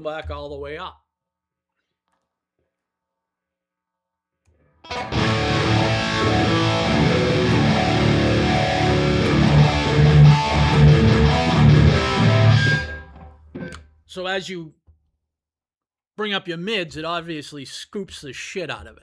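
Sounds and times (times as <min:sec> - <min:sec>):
electric guitar playing: 0:04.9 - 0:13.8.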